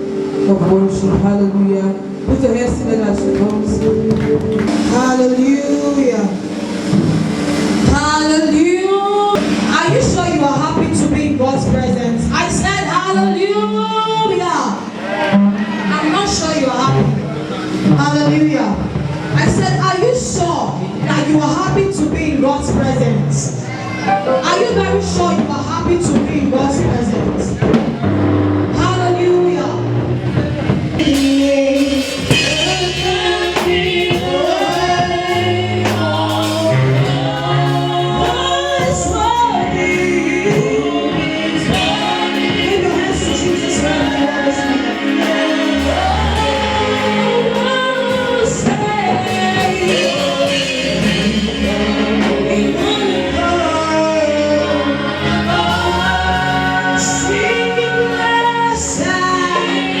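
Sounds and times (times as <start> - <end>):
choir singing: 0.0 - 11.0, 12.7 - 17.9, 30.3 - 60.0
instrumental accompaniment with bass: 0.0 - 60.0
woman singing: 30.4 - 60.0.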